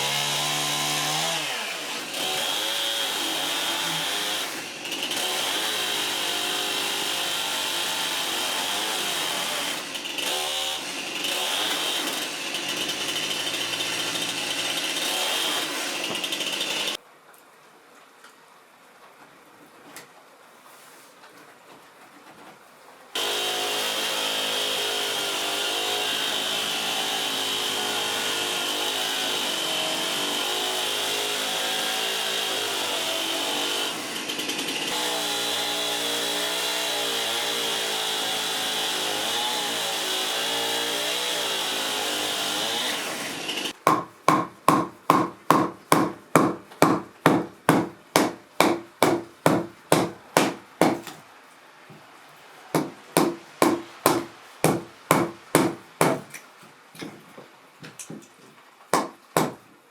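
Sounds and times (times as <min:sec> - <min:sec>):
electric power tool cutting wood: 0:00.0 - 0:17.0, 0:23.2 - 0:43.8.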